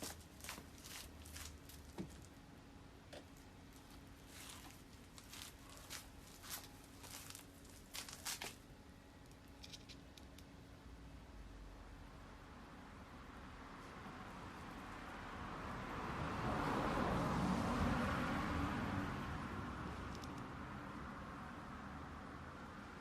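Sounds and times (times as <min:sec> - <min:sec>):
faint steady hum: 0:00.0 - 0:15.8
handling clicks and rustles: 0:09.2 - 0:10.5.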